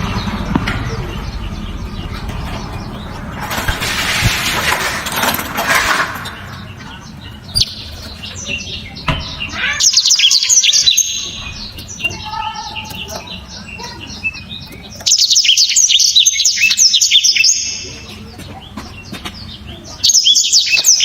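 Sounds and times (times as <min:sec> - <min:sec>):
bird singing high chirps: 0:00.0 - 0:04.8, 0:05.9 - 0:21.0
low rumbling noise: 0:00.0 - 0:15.3.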